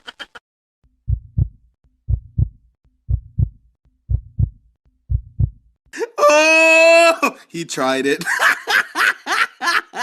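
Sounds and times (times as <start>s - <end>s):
heartbeat thumps: 1.0s - 5.7s.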